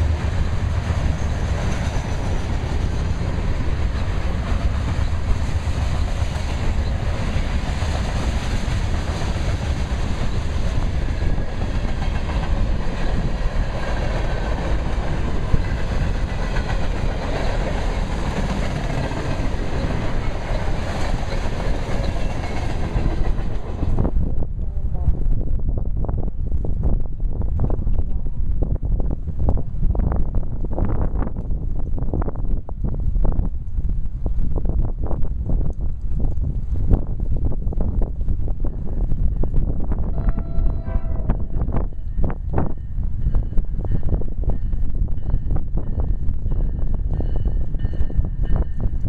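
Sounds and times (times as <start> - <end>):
train wheels clicking over rails: 0.0 - 24.1.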